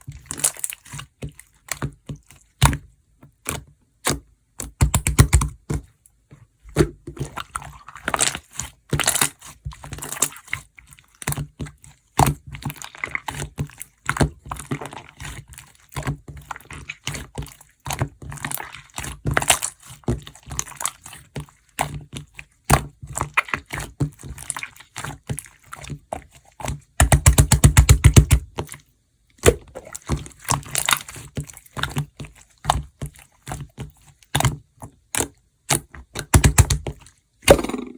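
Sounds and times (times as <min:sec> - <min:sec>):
slime squelching: 0:00.0 - 0:37.9
slime popping and crackling: 0:36.2 - 0:36.9, 0:37.5 - 0:37.9.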